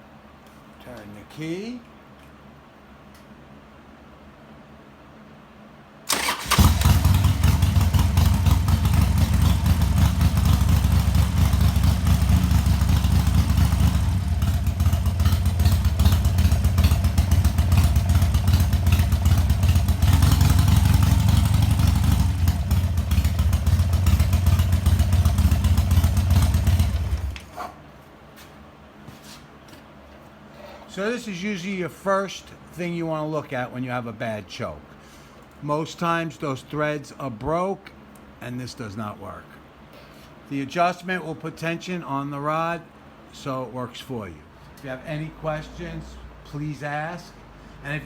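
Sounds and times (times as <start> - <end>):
motorcycle engine starting and idling: 6.1 - 27.6.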